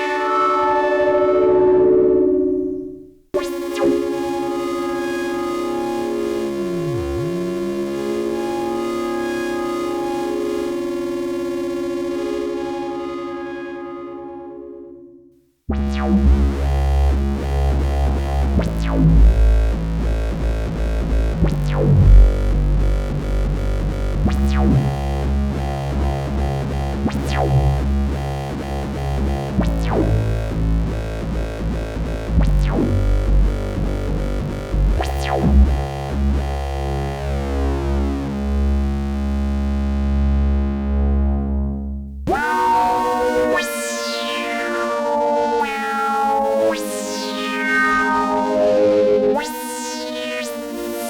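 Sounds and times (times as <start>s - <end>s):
synthesizer playing sustained chords: 0.0s - 51.0s
bright sweeping synth attack: 3.7s - 9.5s
deep synth bass: 5.4s - 9.0s, 15.7s - 43.0s.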